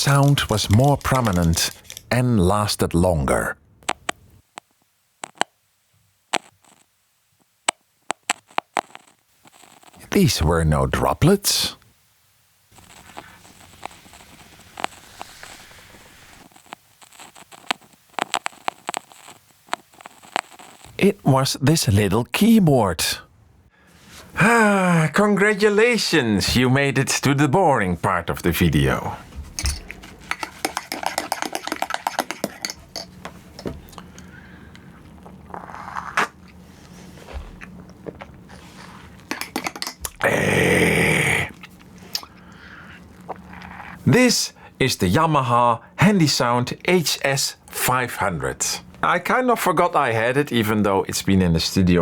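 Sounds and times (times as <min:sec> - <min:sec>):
crackling clicks and pops: 0:00.0 - 0:02.5, 0:03.8 - 0:10.1, 0:11.7 - 0:21.0, 0:41.6 - 0:44.0
loud burst of hiss: 0:13.0 - 0:16.5.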